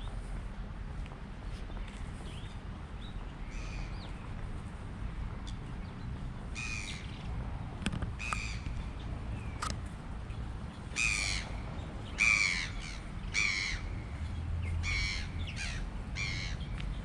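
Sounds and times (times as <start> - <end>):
harsh crow-like bird calls: 3.4 - 4.2, 6.5 - 7.3, 8.2 - 9.6, 10.9 - 16.8.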